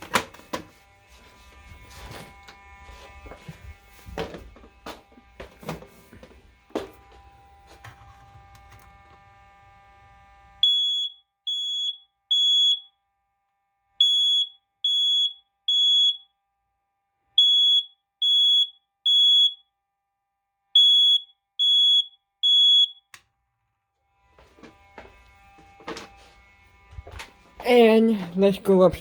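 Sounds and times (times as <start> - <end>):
smoke alarm beeping: 10.6 - 13.0, 14.0 - 16.4, 17.3 - 19.7, 20.7 - 23.2.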